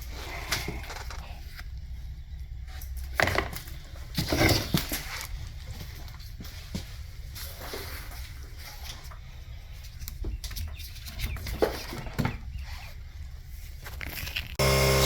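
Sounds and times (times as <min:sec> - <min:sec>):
low steady hum: 0:14.6 - 0:15.0.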